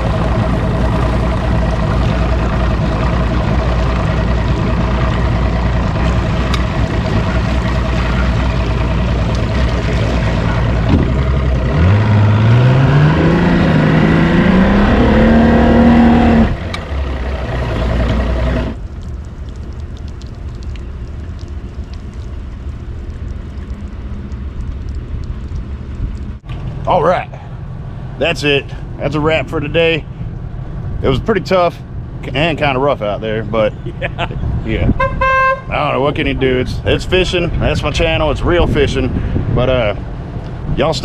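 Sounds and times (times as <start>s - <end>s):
rushing wind and water: 0.0s - 26.4s, 34.4s - 41.0s
outboard motor running: 0.0s - 27.0s.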